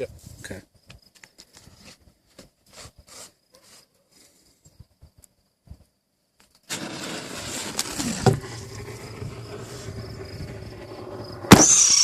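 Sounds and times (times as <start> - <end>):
descending firework whistle: 6.7 - 12.0
firework fuse hissing: 6.7 - 12.0
firework launch bang: 6.7 - 12.0.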